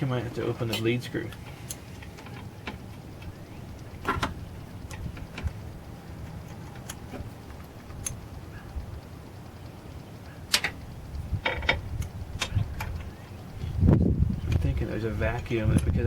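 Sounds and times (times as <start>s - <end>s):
low steady rumble: 0.0s - 16.0s.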